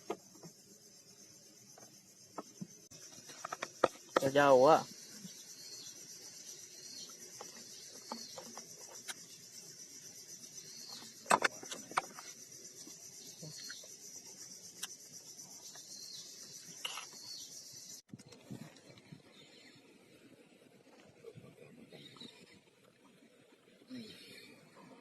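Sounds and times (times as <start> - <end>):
high-pitched insect chorus: 0.0 - 18.1.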